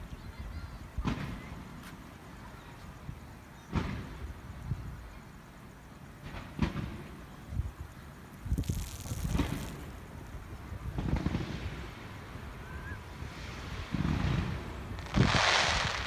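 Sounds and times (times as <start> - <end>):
fireworks booming: 3.7 - 4.3, 6.2 - 7.2, 8.5 - 10.1, 13.8 - 16.0.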